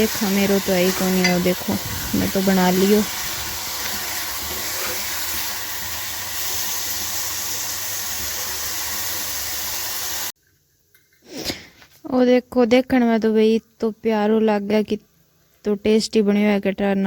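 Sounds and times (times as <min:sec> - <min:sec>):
food hissing in a pan: 0:00.0 - 0:10.3.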